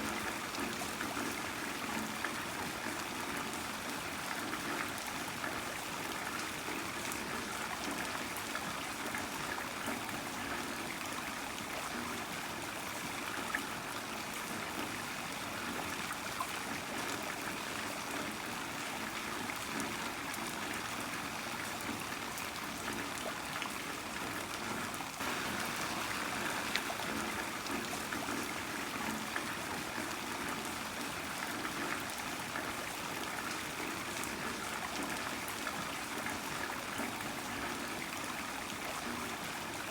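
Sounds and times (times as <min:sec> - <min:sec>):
raindrops ticking: 0:25.2 - 0:28.0
heavy rain: 0:25.2 - 0:31.4.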